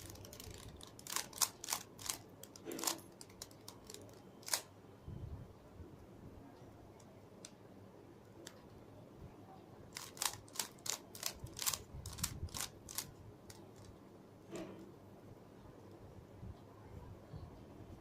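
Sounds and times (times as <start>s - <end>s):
puzzle cube clicking: 0.0s - 4.7s, 10.0s - 13.9s.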